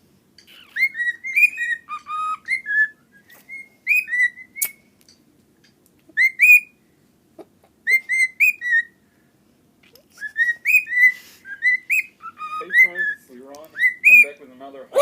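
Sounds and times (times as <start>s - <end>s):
pet bird whistling: 0.5s - 4.9s, 6.1s - 6.8s, 7.8s - 9.0s, 10.1s - 14.4s.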